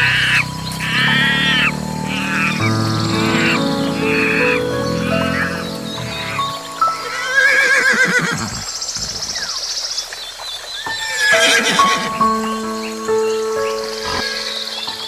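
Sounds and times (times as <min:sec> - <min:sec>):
background music: 0:00.0 - 0:08.1, 0:11.1 - 0:15.0
horse whinnying: 0:07.0 - 0:08.7, 0:11.0 - 0:12.2.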